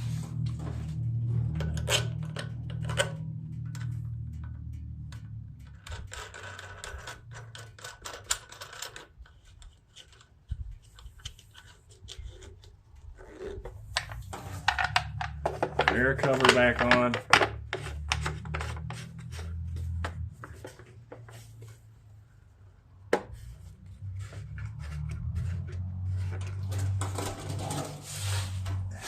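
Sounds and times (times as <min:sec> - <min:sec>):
low steady hum: 0:00.0 - 0:07.5
parts clicking and scraping: 0:00.0 - 0:29.0.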